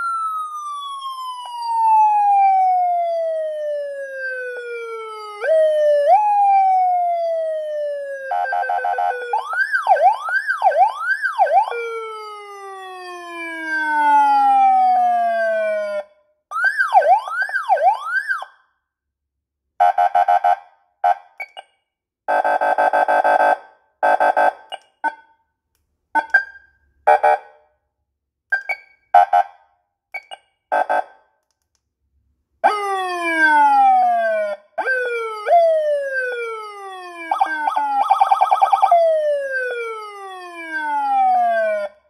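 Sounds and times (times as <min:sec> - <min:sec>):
police siren wail and yelp: 0:00.0 - 0:18.7, 0:32.6 - 0:42.0.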